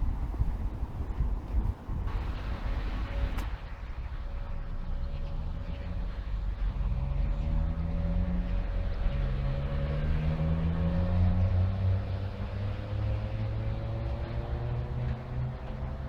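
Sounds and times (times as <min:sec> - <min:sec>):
traffic passing: 0:00.0 - 0:16.0
vehicles accelerating: 0:05.0 - 0:16.0.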